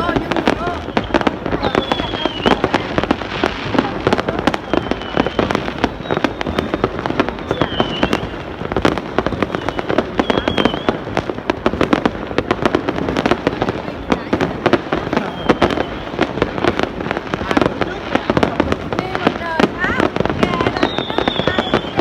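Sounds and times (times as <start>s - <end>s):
fireworks cracking and popping: 0.0s - 22.0s
firework whistles dipping in pitch: 0.7s - 11.4s, 15.0s - 17.4s, 19.8s - 22.0s.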